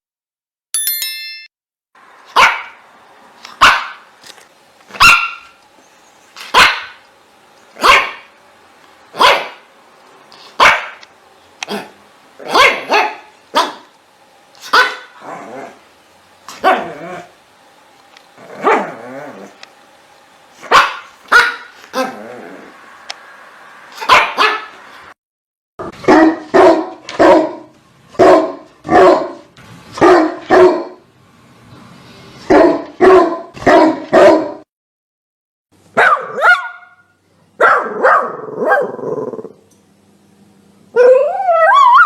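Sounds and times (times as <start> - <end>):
dogs barking: 2.3 - 2.8, 3.6 - 4.1, 4.9 - 5.6, 6.4 - 7.1, 7.8 - 8.4, 9.1 - 9.7, 10.5 - 11.1, 11.7 - 14.0, 14.6 - 15.2, 16.5 - 17.2, 18.5 - 19.0, 20.6 - 22.2, 24.0 - 24.8, 25.8 - 31.0, 32.5 - 34.6, 36.0 - 39.0
high yelping bark: 2.3 - 2.8, 3.6 - 4.1, 4.9 - 5.6, 6.4 - 7.1, 7.8 - 8.4, 9.1 - 9.7, 10.5 - 11.0, 11.7 - 14.0, 14.6 - 15.2, 16.5 - 17.3, 18.5 - 19.0, 20.6 - 22.2, 23.9 - 24.8, 25.8 - 31.0, 32.5 - 34.6, 35.9 - 39.0, 41.0 - 42.0.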